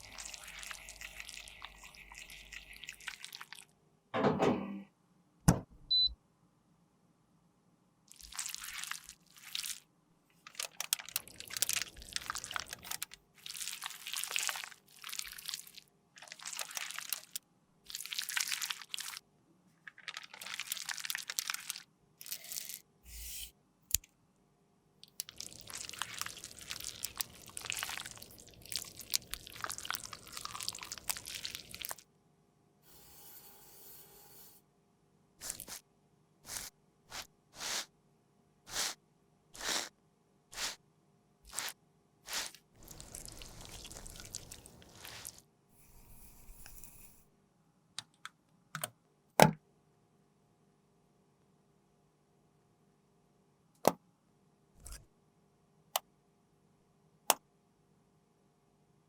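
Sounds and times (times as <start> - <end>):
scraping and crunching of makeup: 8.2 - 9.8, 39.6 - 39.9, 41.5 - 45.4.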